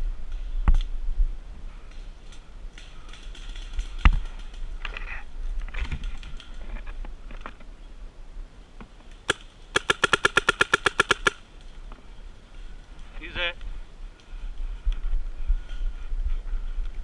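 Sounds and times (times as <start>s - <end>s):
paintball marker shots: 9.3s - 11.4s.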